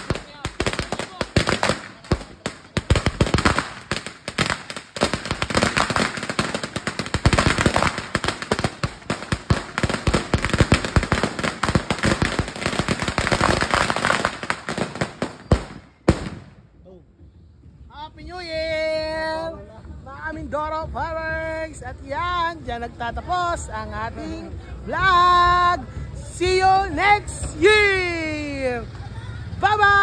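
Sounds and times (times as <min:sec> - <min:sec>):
firecrackers crackling rapidly: 0:00.0 - 0:16.6.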